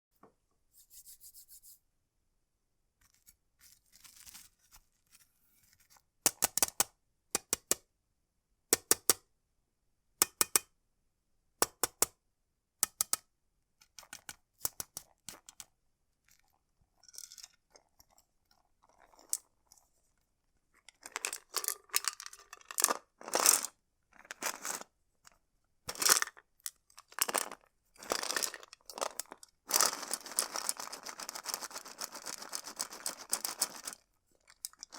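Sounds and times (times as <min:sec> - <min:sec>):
scratchy strokes on a tin: 0:00.7 - 0:01.8
metallic clicks on a tin: 0:10.2 - 0:10.7, 0:12.8 - 0:13.2.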